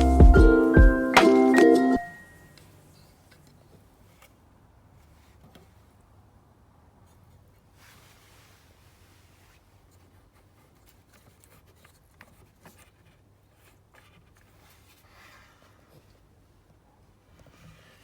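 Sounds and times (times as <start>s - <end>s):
faint scratching: 6.9s - 18.0s.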